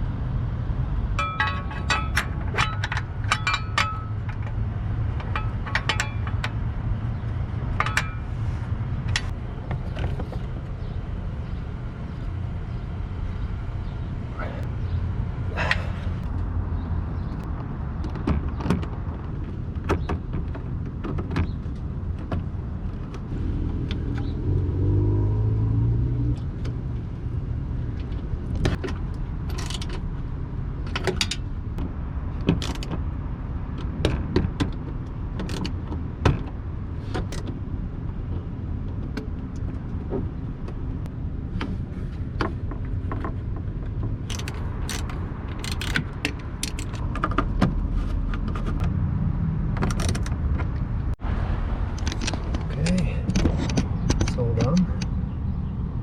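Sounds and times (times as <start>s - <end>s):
steady low rumble: 0.0s - 18.2s.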